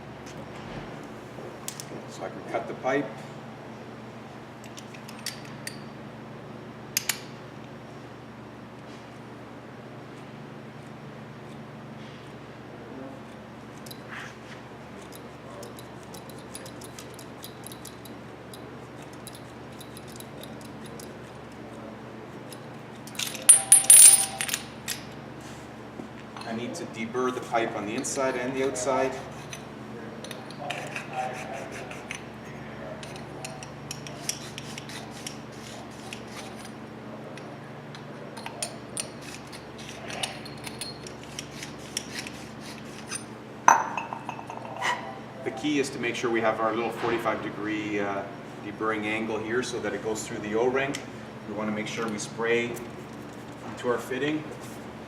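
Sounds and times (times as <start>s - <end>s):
deburring tool scraping pipe: 34.0s - 36.7s, 39.1s - 43.3s.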